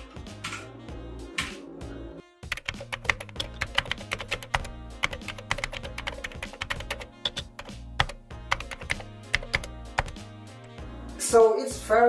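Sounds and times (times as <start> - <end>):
background music: 0.0 - 12.0
mechanical keyboard typing: 2.5 - 10.2.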